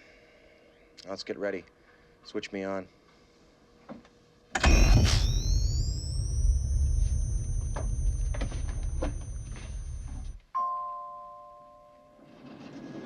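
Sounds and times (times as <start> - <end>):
deep hum: 4.6 - 10.4
high electronic whine: 4.6 - 10.4
elevator bell ding: 4.6 - 11.8.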